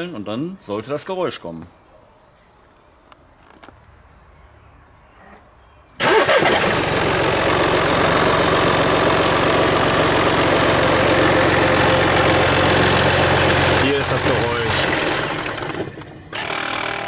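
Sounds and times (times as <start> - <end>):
diesel engine starting and idling: 6.0 - 17.0.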